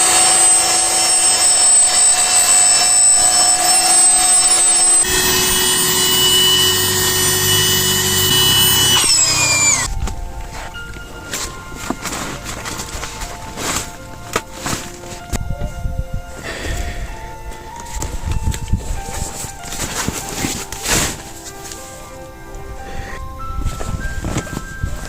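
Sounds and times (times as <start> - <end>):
small electric motor whining: 0.0 - 9.9.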